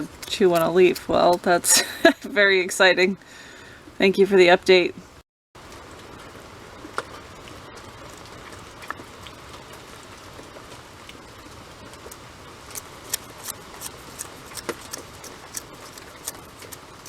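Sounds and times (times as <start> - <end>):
wind: 0.0 - 17.0
rain: 5.6 - 17.0.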